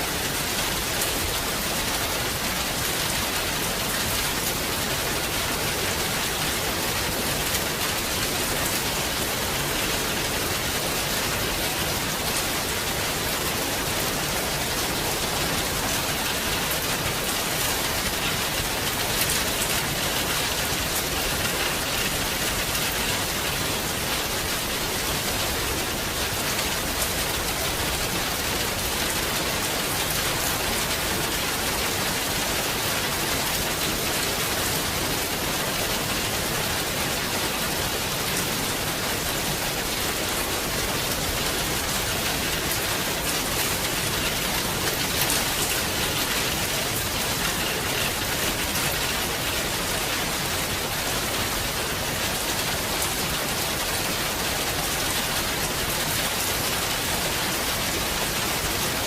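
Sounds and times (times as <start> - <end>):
heavy rain falling: 0.0 - 59.0.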